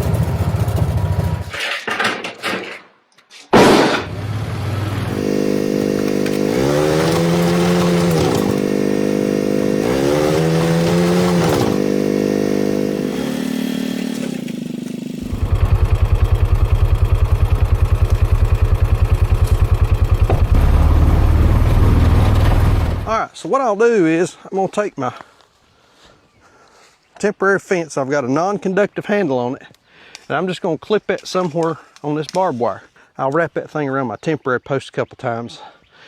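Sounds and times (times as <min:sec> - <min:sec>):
small engine revving: 0:03.7 - 0:23.1.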